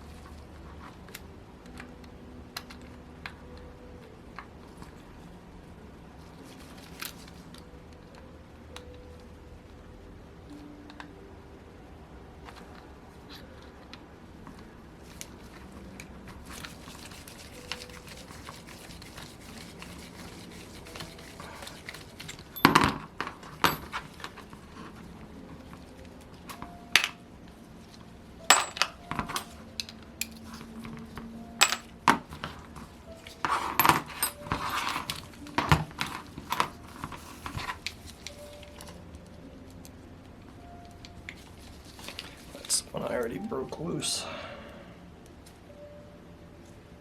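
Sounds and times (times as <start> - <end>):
metal parts clinking and clanking: 20.5 - 24.5, 28.5 - 30.6, 31.6 - 32.5, 33.4 - 38.9.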